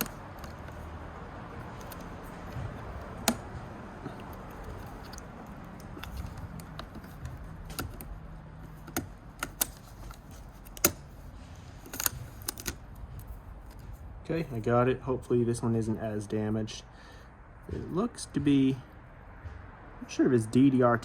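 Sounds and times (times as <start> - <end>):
sharp clicks and metallic taps: 0.0 - 11.1.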